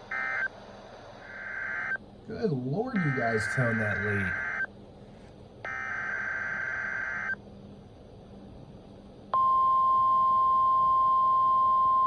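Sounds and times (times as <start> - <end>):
steady warning alarm tone: 0.0 - 0.5, 1.2 - 2.0, 2.8 - 4.7, 5.7 - 7.4.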